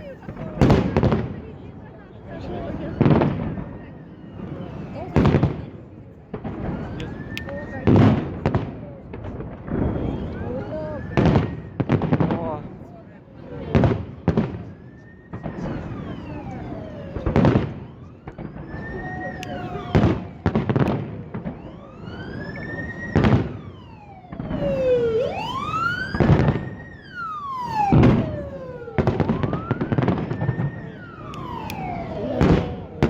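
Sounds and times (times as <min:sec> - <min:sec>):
whistling firework shells: 0:09.7 - 0:11.9, 0:24.4 - 0:32.9
fireworks bursting: 0:15.3 - 0:33.0.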